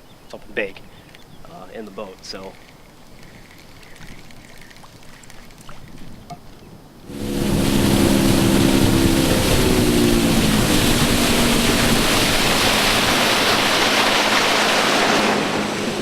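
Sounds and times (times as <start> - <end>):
wind and water rushing: 0.0 - 16.0
outboard motor running: 7.1 - 16.0.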